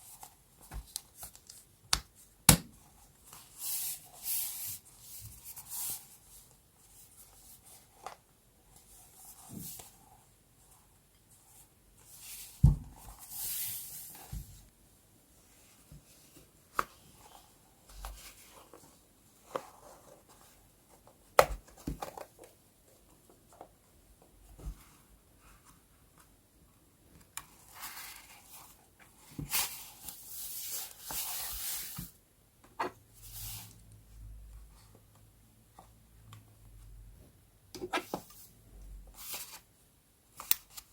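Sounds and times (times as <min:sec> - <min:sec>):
paper rustling and sliding: 0:29.4 - 0:32.1.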